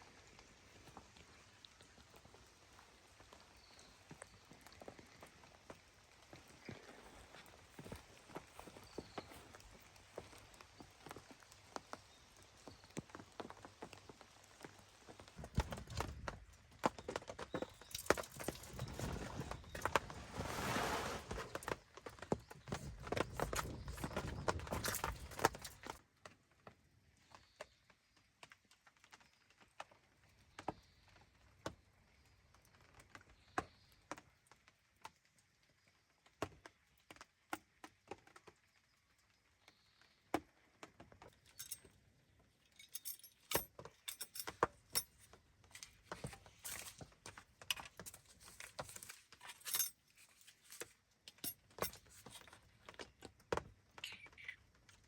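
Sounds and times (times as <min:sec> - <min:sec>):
objects clicking and clinking: 0:17.3 - 0:20.3, 0:42.7 - 0:53.2.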